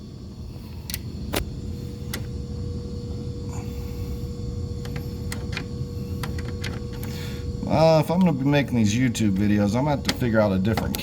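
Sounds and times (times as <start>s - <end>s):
low machinery rumble: 0.0s - 11.0s
steady hum-like tone: 0.0s - 11.0s
hand tools clicking and tapping: 9.4s - 11.0s.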